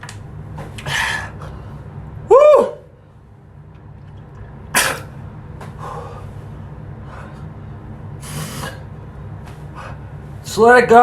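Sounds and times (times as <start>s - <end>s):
low steady hum: 0.0s - 11.0s
man breathing sharply: 5.7s - 8.9s, 9.7s - 10.2s.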